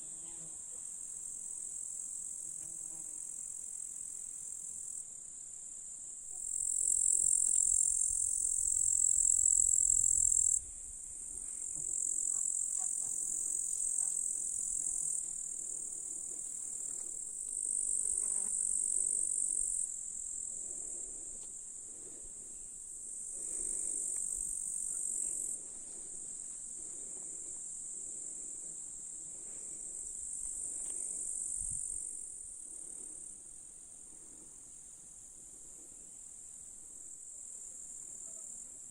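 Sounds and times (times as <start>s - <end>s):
grasshoppers stridulating: 6.0s - 10.6s, 11.2s - 38.9s.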